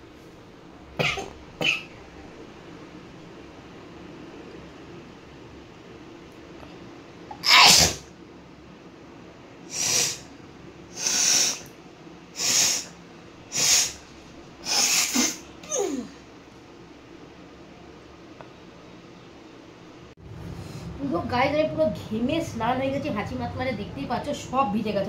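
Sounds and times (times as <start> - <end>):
woman sneezing: 7.4 - 8.0, 14.6 - 16.2.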